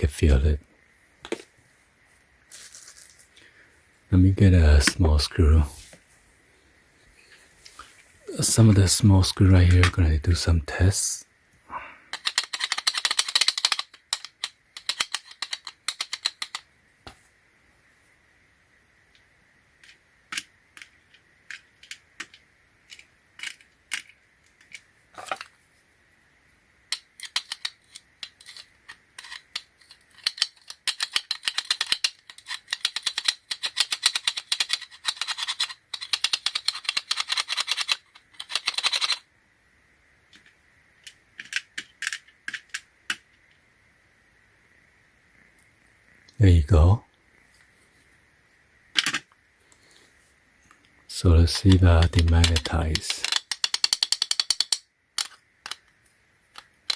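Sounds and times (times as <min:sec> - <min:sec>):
small metal clicks and taps: 0:12.1 - 0:16.6, 0:19.8 - 0:25.5, 0:26.9 - 0:39.2, 0:52.5 - 0:56.9
fast rattling clicks: 0:12.1 - 0:16.7, 0:26.9 - 0:39.2, 0:52.0 - 0:56.0.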